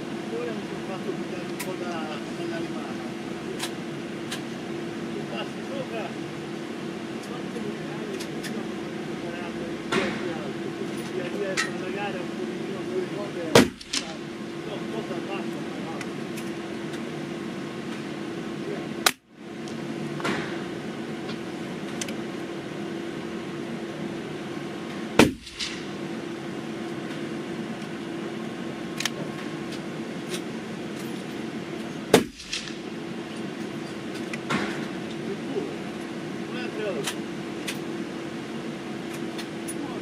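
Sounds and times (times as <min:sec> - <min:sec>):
steady low hum: 0:00.0 - 0:40.0
rifle shots: 0:13.6 - 0:14.2, 0:25.2 - 0:26.0, 0:32.2 - 0:33.0.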